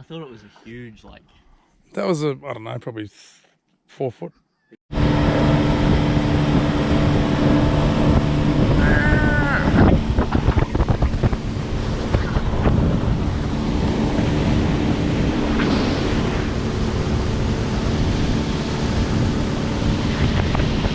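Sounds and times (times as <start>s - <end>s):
boat engine running: 4.9s - 20.9s
wind buffeting microphone: 4.9s - 20.9s
water rushing past hull: 5.0s - 20.9s.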